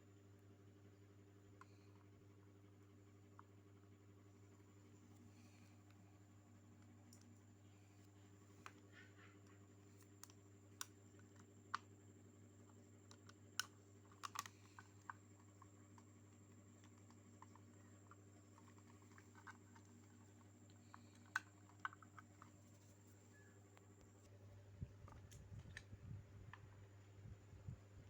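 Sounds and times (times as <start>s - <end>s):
low electrical hum: 0.0s - 28.0s.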